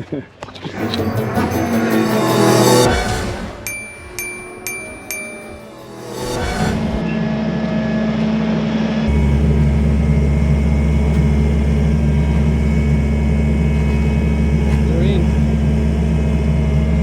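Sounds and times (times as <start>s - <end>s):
tractor engine running: 9.1s - 17.0s.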